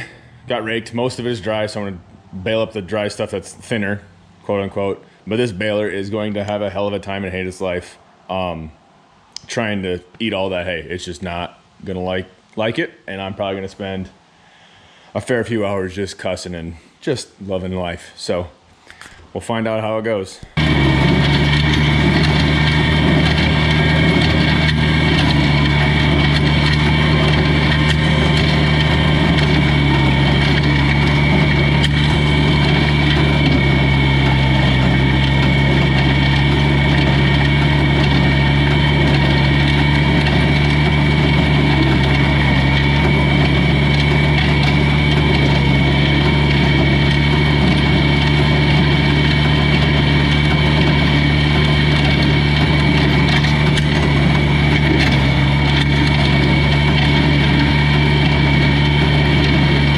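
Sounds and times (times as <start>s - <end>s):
tractor engine running: 0.0s - 7.7s, 20.4s - 59.9s.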